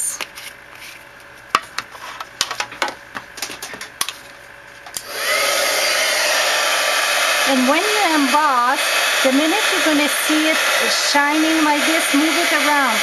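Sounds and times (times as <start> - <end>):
heat tool fan blowing: 0.0 - 13.0
rising whine of fan: 0.0 - 13.0.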